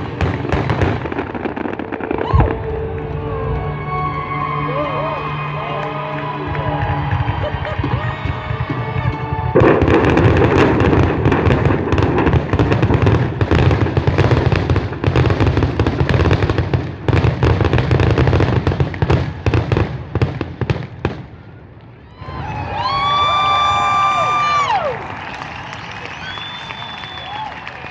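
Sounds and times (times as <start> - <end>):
fireworks bangs and crackles: 0.0 - 27.9
music: 2.0 - 10.8.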